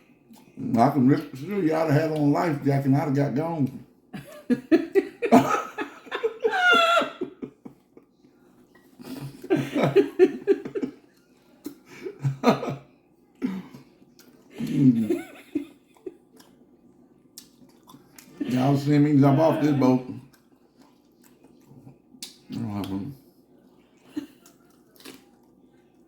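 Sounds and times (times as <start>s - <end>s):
people laughing: 4.2s - 8.0s, 9.0s - 11.1s, 11.9s - 12.8s, 14.6s - 16.1s.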